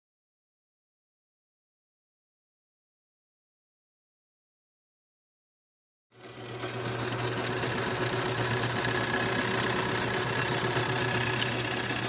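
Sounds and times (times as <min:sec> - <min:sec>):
metal lathe humming and whining: 0:06.2 - 0:12.0.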